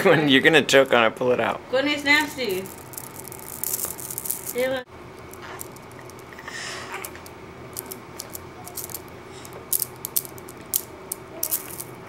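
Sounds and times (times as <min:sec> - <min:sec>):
faint steady hum: 0:00.0 - 0:12.0
sharp clicks of small objects: 0:02.2 - 0:06.3, 0:07.0 - 0:12.0.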